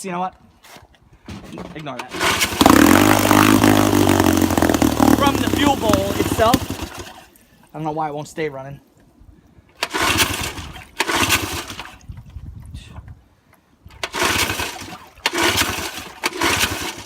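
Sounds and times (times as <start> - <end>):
outboard motor cranking and sputtering: 1.3 - 7.4, 9.8 - 12.0, 13.9 - 17.0.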